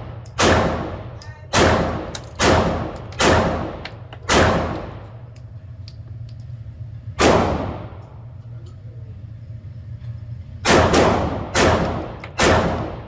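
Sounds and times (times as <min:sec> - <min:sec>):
handgun shots echoing: 0:00.0 - 0:05.1, 0:10.7 - 0:13.0.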